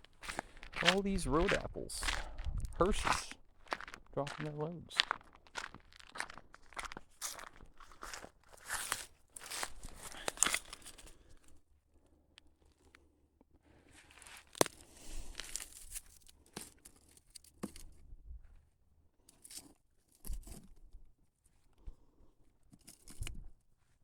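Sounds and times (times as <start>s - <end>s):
footsteps crunching on a dry trail: 0.0s - 11.1s, 14.0s - 16.2s.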